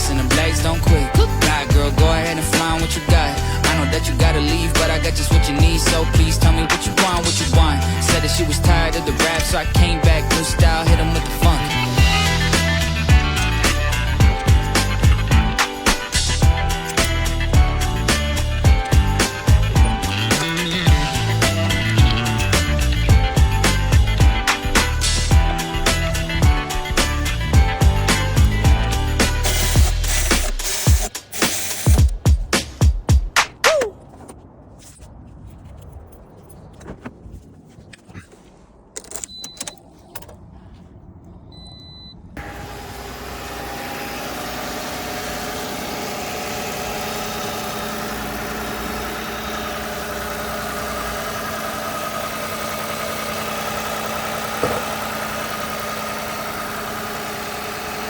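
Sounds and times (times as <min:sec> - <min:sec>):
car keys jangling: 0:00.0 - 0:32.2, 0:33.9 - 0:37.1, 0:38.9 - 0:40.5, 0:45.8 - 0:58.0
upbeat funk-pop music: 0:00.0 - 0:33.9.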